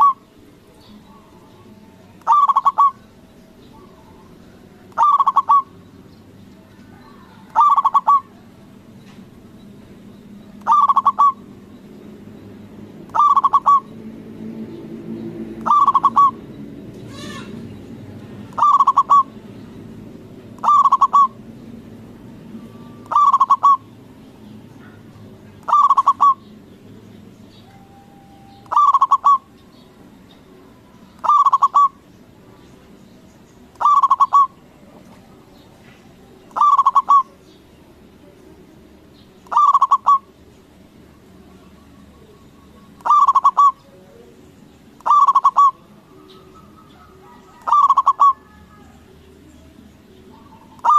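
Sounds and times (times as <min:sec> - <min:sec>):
dove cooing: 0:00.0 - 0:00.3, 0:02.1 - 0:05.8, 0:06.9 - 0:08.8, 0:10.6 - 0:11.6, 0:13.1 - 0:14.0, 0:15.6 - 0:16.5, 0:18.5 - 0:19.4, 0:20.5 - 0:21.6, 0:22.5 - 0:24.1, 0:24.8 - 0:26.5, 0:27.6 - 0:29.6, 0:30.8 - 0:32.1, 0:33.7 - 0:34.6, 0:36.5 - 0:37.4, 0:39.4 - 0:40.4, 0:41.5 - 0:44.3, 0:45.0 - 0:49.2, 0:50.3 - 0:50.9.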